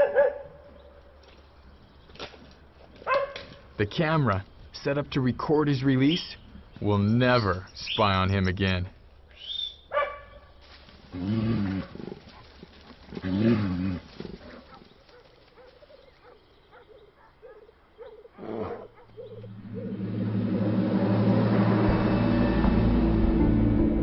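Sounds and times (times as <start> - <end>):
bear growling: 11.1 - 14.8
music: 19.8 - 24.0.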